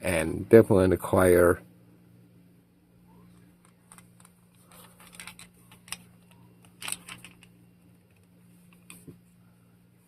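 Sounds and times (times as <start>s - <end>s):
faint low hum: 0.0s - 10.0s.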